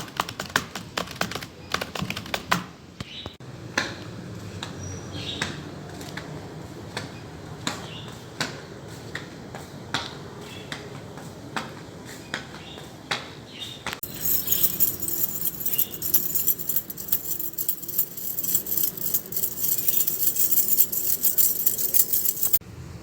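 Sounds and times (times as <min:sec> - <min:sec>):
small metal pieces jangling: 0:14.0 - 0:22.6.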